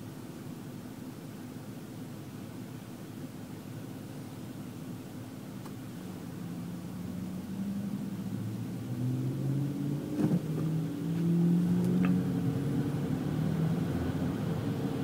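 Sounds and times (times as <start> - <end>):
car engine and road hum: 0.0 - 15.0.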